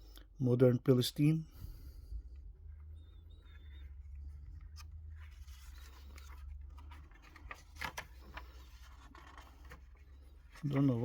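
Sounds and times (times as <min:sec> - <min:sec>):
faint low hum: 0:00.0 - 0:11.0
paper pages rustling: 0:04.5 - 0:11.0.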